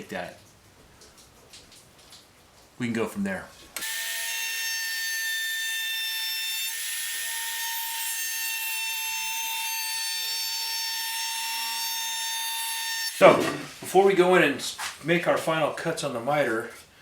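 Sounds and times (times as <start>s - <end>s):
router whine cutting wood: 3.8s - 13.5s.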